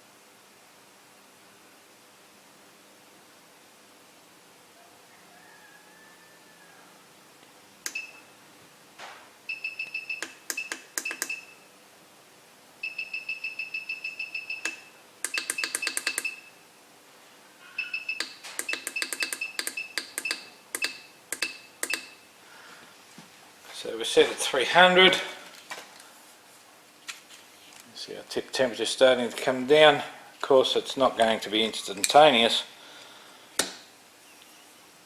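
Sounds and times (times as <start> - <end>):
short high electronic beeps: 17.8 - 22.2.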